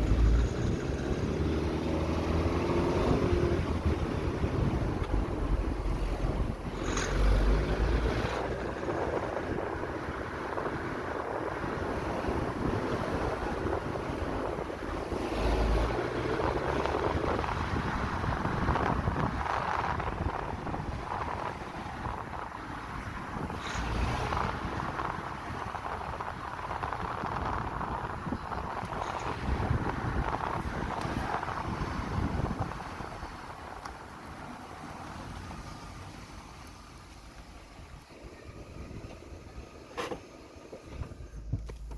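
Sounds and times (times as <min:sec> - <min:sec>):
engine tapping and knocking: 0:00.0 - 0:01.5, 0:13.2 - 0:41.9
car engine rumble: 0:00.0 - 0:41.9
wind buffeting microphone: 0:00.0 - 0:41.9.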